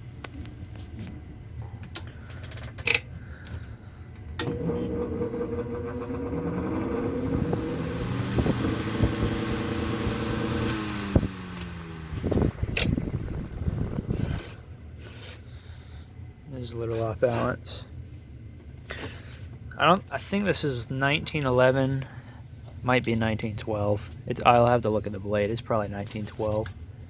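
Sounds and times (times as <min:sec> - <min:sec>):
fan motor humming: 0:00.0 - 0:27.0
fan switch clicks: 0:11.5 - 0:13.2.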